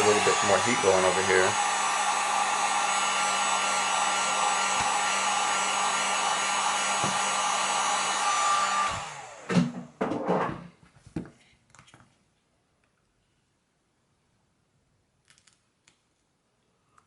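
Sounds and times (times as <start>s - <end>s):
heat gun blowing: 0.0s - 9.6s.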